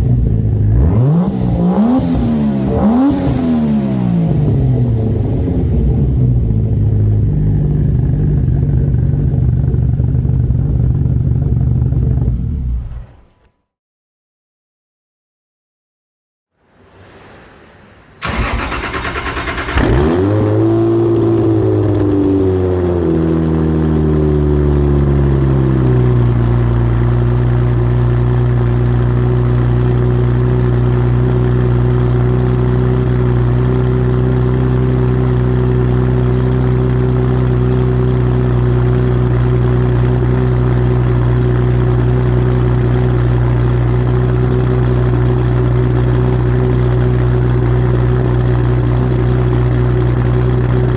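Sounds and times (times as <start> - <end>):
car engine starting and idling: 0.0 - 13.5, 16.7 - 50.9
starter motor cranking: 18.2 - 20.7.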